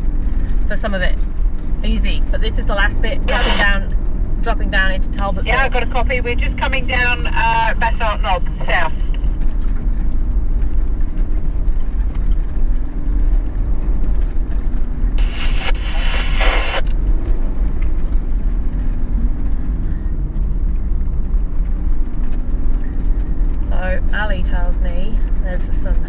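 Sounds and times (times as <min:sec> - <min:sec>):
vehicle engine low rumble: 0:00.0 - 0:26.0
two-way radio voice burst: 0:03.3 - 0:03.9, 0:05.5 - 0:09.1, 0:15.2 - 0:16.8.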